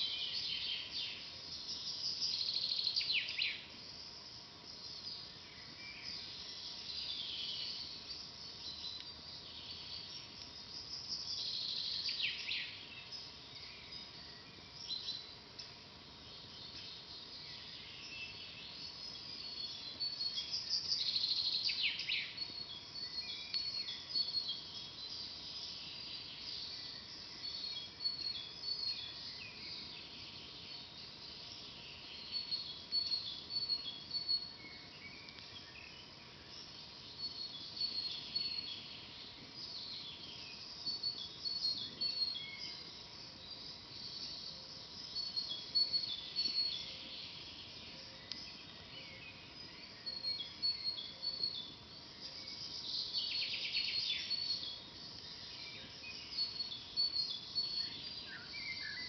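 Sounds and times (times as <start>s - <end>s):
steady low hiss: 0.0s - 59.0s
birds chirping and singing: 16.4s - 59.0s.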